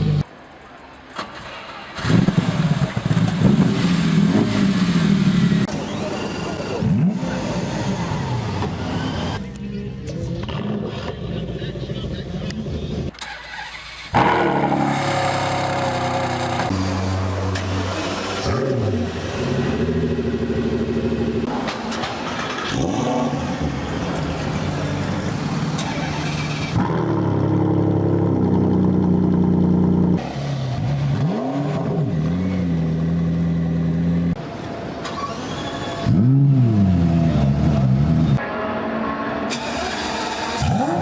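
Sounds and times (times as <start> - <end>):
car engines starting and idling: 0.0 - 41.0
engine revving: 12.5 - 21.6, 22.4 - 34.4, 35.1 - 38.4, 39.3 - 41.0.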